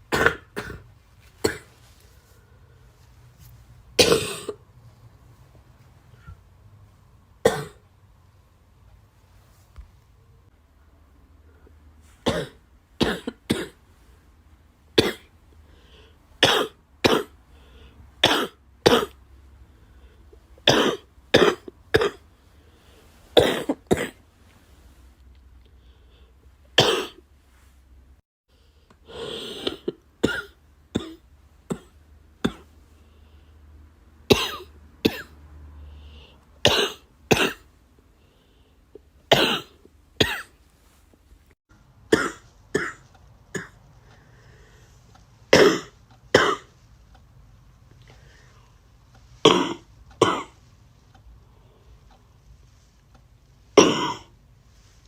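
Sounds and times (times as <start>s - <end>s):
person coughing: 0.1s - 1.8s, 4.0s - 4.6s, 7.4s - 7.8s, 12.2s - 13.8s, 15.0s - 15.3s, 16.4s - 17.4s, 18.2s - 19.2s, 20.6s - 22.2s, 23.4s - 24.2s, 26.8s - 27.2s, 29.1s - 32.7s, 34.3s - 35.4s, 36.6s - 37.7s, 39.3s - 40.5s, 42.1s - 43.8s, 45.5s - 46.7s, 49.4s - 50.6s, 53.8s - 54.3s.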